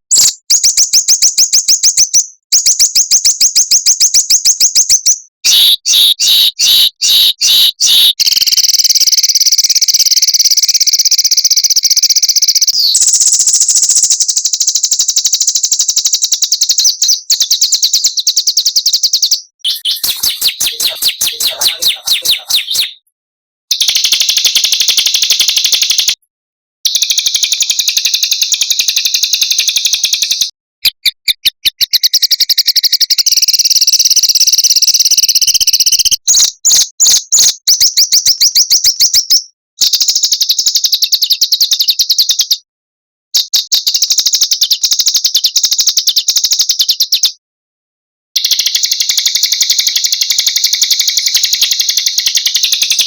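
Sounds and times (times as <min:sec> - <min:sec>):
songbirds trilling: 0:19.7 - 0:23.0.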